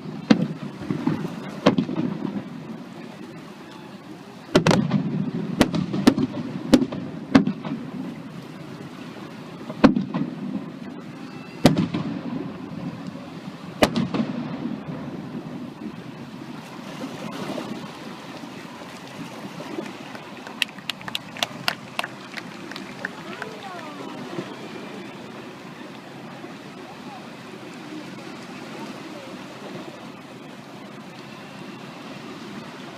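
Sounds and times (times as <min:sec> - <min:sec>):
firework bangs with rumbling tail: 0:00.2 - 0:02.6, 0:04.5 - 0:08.1, 0:09.7 - 0:10.7, 0:11.6 - 0:13.0, 0:13.8 - 0:15.6.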